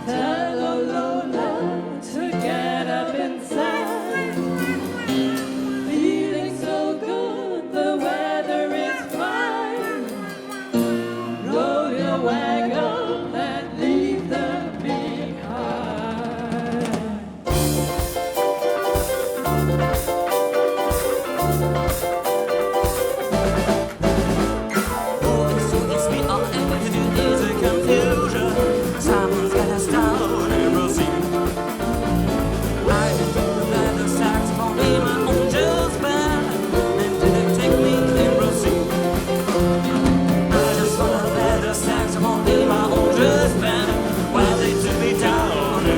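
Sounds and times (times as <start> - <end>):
live band playing: 1.4 - 45.9
drums and bass: 14.2 - 45.9.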